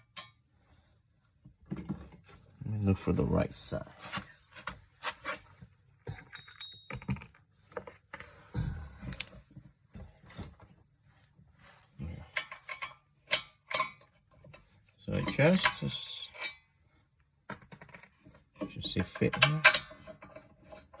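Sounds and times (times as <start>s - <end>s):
metal tools clinking and rattling: 6.1s - 7.5s, 12.0s - 16.7s, 17.8s - 21.0s.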